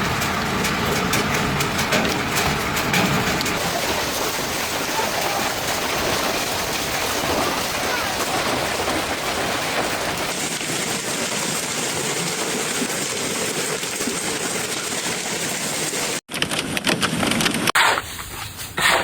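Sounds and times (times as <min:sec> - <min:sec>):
sharp clattering knocks: 0:00.0 - 0:03.6
heavy downpour: 0:00.0 - 0:16.2.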